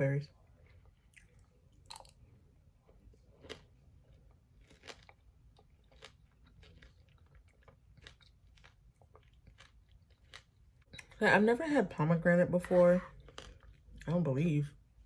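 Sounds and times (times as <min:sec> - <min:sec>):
chewing with wet crunches: 0:00.4 - 0:11.2, 0:13.1 - 0:14.2.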